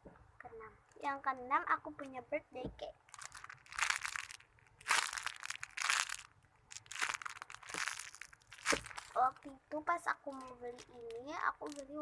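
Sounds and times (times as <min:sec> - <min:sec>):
plastic crinkling: 0:03.0 - 0:12.0.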